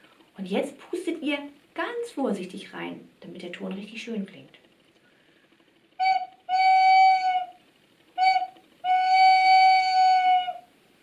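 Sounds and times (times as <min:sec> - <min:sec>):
recorder hooting like an owl: 0:06.0 - 0:10.8.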